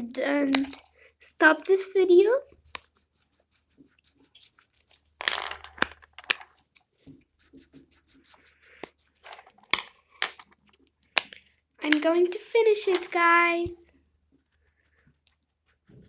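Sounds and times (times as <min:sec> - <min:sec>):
colouring tool scratching on paper: 0:00.0 - 0:05.2, 0:06.5 - 0:10.2, 0:13.8 - 0:16.0
sharp clicks and taps: 0:00.2 - 0:00.9, 0:08.7 - 0:13.8.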